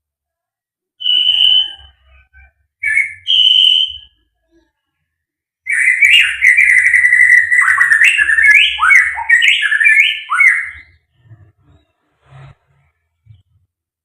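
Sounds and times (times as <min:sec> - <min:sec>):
bird singing whistled notes: 0:01.0 - 0:02.1, 0:02.8 - 0:04.2, 0:05.7 - 0:11.0.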